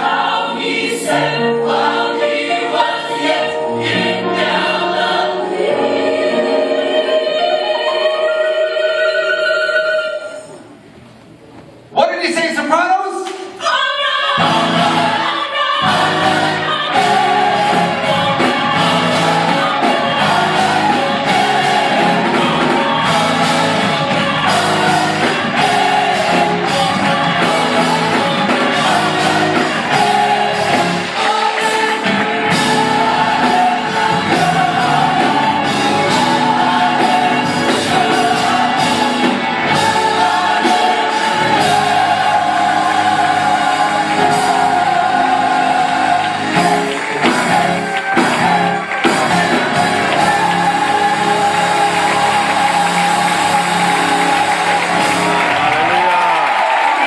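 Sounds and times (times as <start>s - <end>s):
gospel choir singing: 0.0s - 11.0s, 13.4s - 57.0s
band accompaniment with steady beat: 14.4s - 57.0s.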